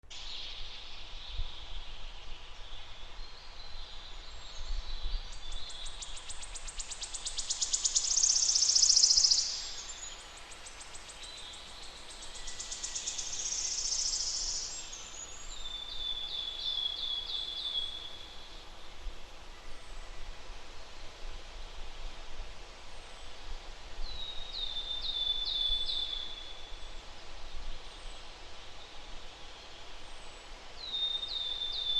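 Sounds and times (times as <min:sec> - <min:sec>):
distant birds or insects: 0:05.2 - 0:20.0.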